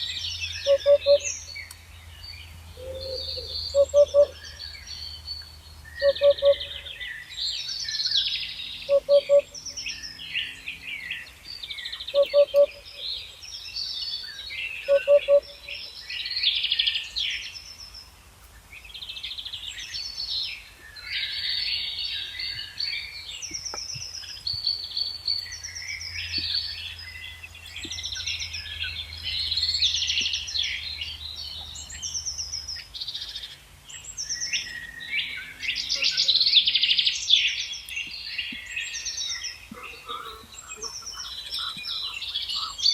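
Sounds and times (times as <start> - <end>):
lower-pitched bird call: 0.0 - 1.7, 2.8 - 5.0, 5.9 - 7.3, 8.0 - 13.4, 14.2 - 17.1
songbirds singing: 0.0 - 42.9.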